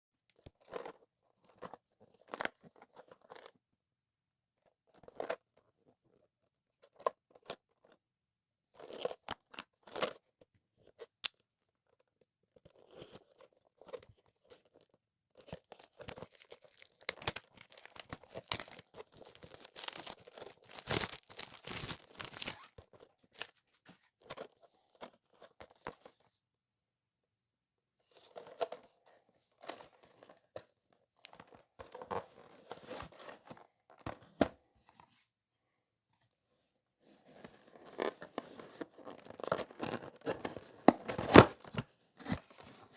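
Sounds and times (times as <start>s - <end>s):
packaging crinkling and tearing: 15.5s - 23.5s.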